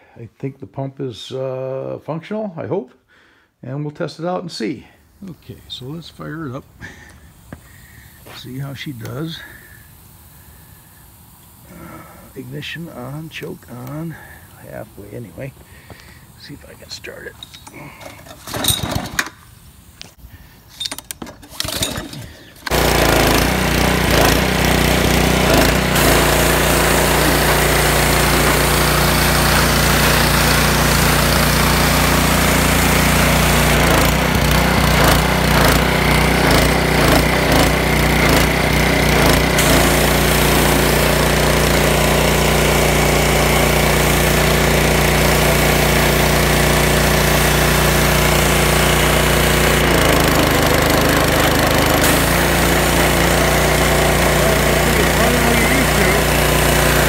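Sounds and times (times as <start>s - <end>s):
pressure washer engine running: 5.3s - 20.0s, 21.3s - 57.0s
starter cord pulls: 20.7s - 24.5s.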